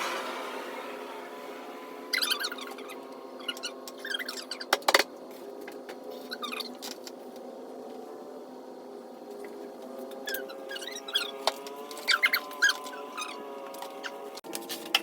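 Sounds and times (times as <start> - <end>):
steady humming drone: 0.0 - 15.0
high squeaky chirps: 2.1 - 4.7, 10.3 - 11.4, 12.0 - 13.4.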